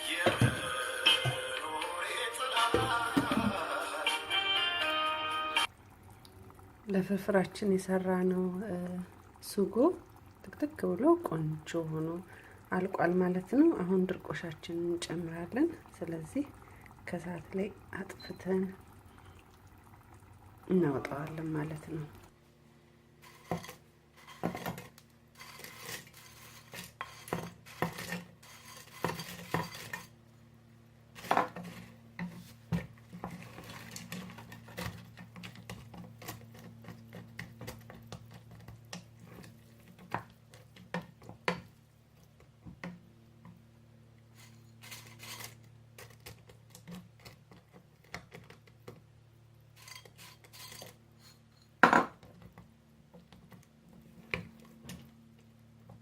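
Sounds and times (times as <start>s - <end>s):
metal spoon scraping a pot: 23.2s - 30.2s, 44.4s - 47.0s, 49.8s - 51.8s.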